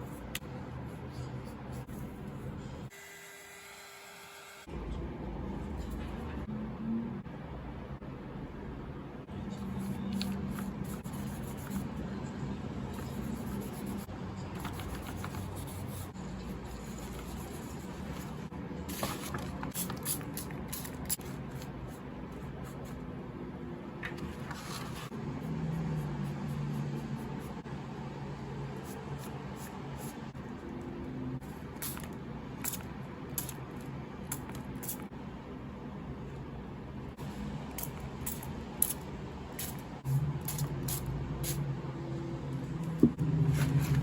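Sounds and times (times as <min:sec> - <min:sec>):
paper rustling and scraping: 0:17.1 - 0:20.1, 0:24.0 - 0:25.2, 0:43.3 - 0:44.0.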